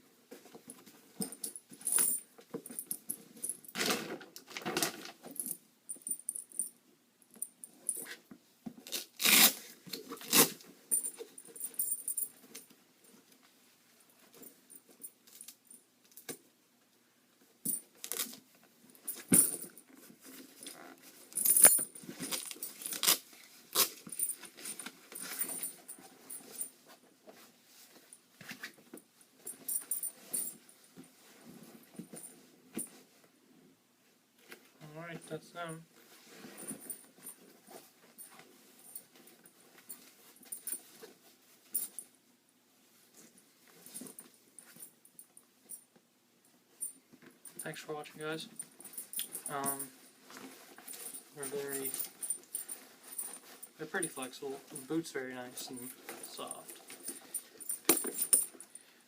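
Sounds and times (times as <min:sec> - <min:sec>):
metallic clinks of buckles: 0:01.2 - 0:03.9, 0:10.2 - 0:12.7, 0:19.0 - 0:20.0, 0:20.6 - 0:23.2, 0:23.8 - 0:26.7, 0:29.4 - 0:30.7, 0:38.2 - 0:40.9, 0:41.7 - 0:42.0, 0:46.8 - 0:58.8
leg pads rustling and knocking: 0:19.0 - 0:33.1, 0:55.6 - 0:58.7.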